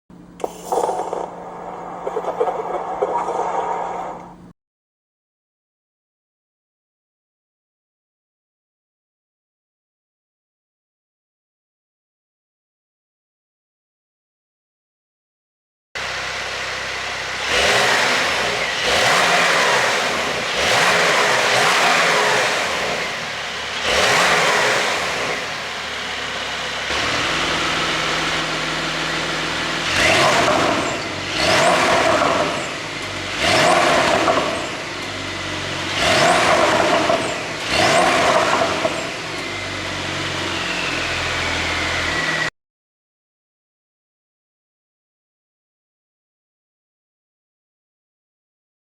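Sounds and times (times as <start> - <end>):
car engine revving: 0.6 - 4.5, 16.0 - 42.5.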